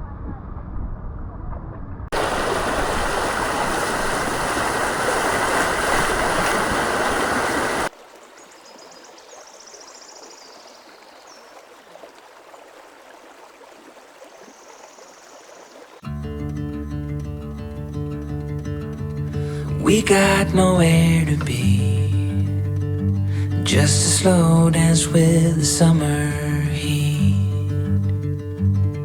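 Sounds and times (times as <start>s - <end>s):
rushing river water: 2.2s - 16.0s.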